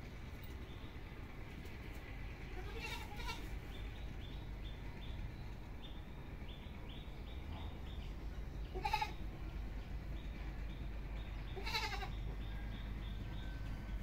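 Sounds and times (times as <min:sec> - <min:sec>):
goat bleating: 0:02.5 - 0:03.5, 0:08.7 - 0:09.2, 0:11.5 - 0:12.2.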